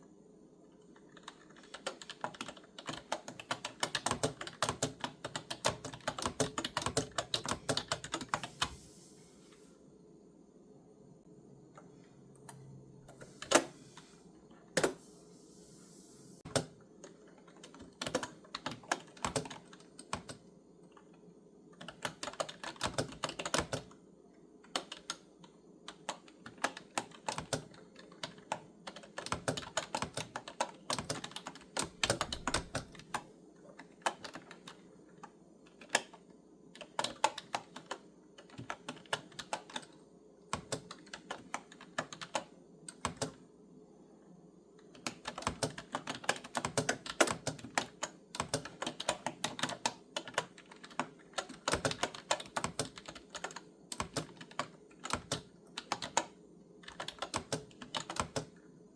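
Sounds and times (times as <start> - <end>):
typing on clicky keyboard: 0.9 - 8.7, 16.5 - 21.1, 21.8 - 23.9, 24.6 - 43.4, 44.8 - 58.6.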